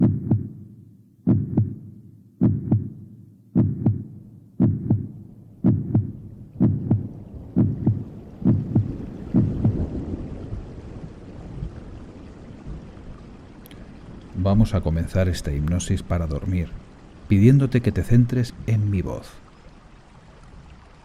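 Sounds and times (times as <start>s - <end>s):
heartbeat thumps: 0.0s - 10.0s
steady rain: 6.2s - 21.0s.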